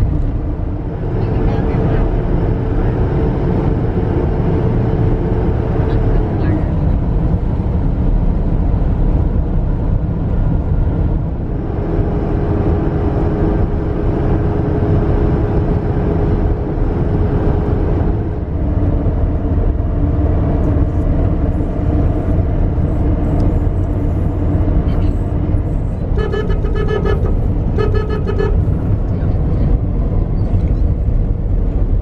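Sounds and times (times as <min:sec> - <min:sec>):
vehicle engine rumbling: 0:00.0 - 0:32.0.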